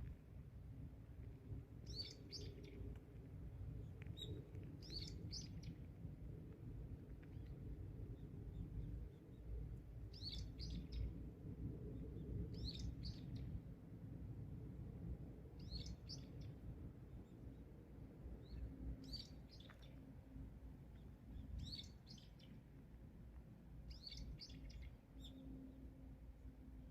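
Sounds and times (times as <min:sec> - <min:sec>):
faint low rumble: 0:00.0 - 0:26.9
songbird chirping: 0:23.9 - 0:26.0.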